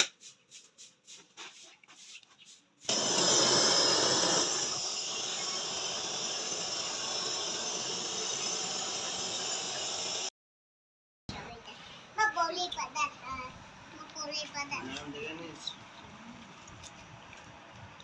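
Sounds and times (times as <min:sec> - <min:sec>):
chicken sizzling in hot oil: 0:02.9 - 0:10.3.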